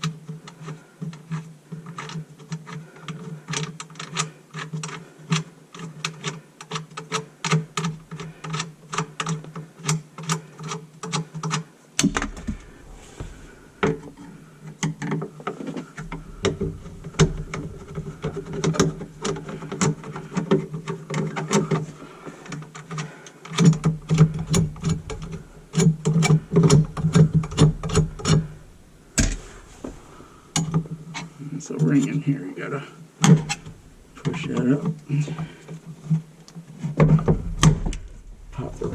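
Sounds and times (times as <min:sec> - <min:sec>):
steady low hum: 0:12.0 - 0:38.9.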